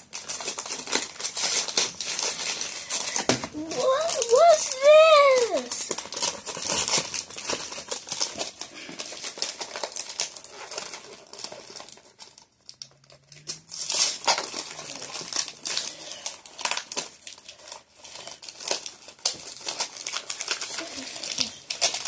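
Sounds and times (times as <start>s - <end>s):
gift paper crinkling: 0.0s - 22.0s.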